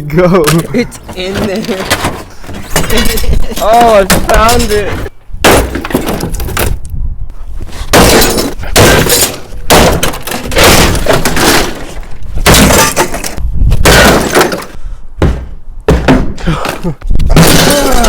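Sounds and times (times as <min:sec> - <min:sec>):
television being smashed: 0:07.9 - 0:14.8, 0:17.4 - 0:18.0.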